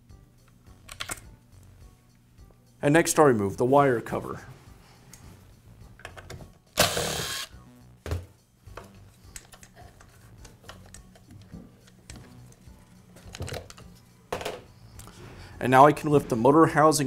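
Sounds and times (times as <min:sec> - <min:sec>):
plastic parts clicking: 0:00.9 - 0:01.2, 0:13.2 - 0:13.9
power screwdriver whirring: 0:06.8 - 0:07.5.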